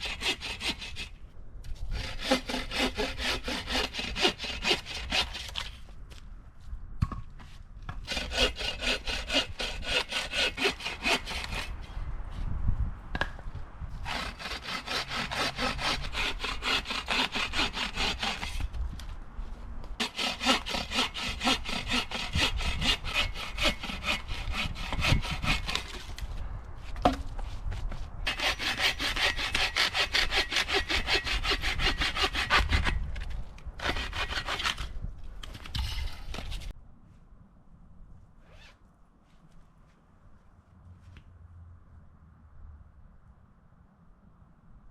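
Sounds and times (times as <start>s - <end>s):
hand saw cutting wood: 0.0s - 1.2s, 1.9s - 5.8s, 8.0s - 11.8s, 14.0s - 18.8s, 20.0s - 26.2s, 28.3s - 35.0s.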